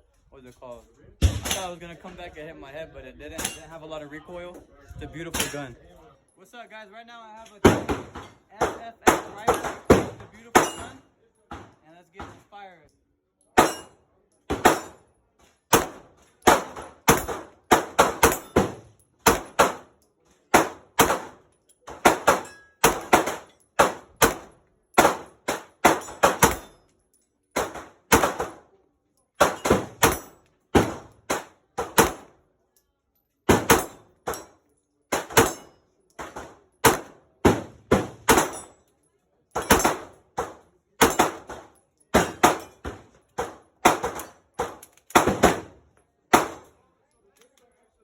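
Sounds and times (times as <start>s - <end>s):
rifle shots: 15.7s - 19.9s, 20.5s - 26.7s, 27.6s - 28.6s, 29.4s - 32.3s, 33.5s - 34.4s, 35.1s - 38.6s, 39.6s - 46.7s.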